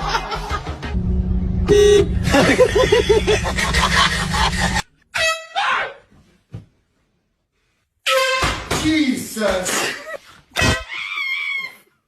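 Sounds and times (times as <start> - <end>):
loud low rumble: 0.8 - 4.9
loud air horn blast: 0.9 - 4.8.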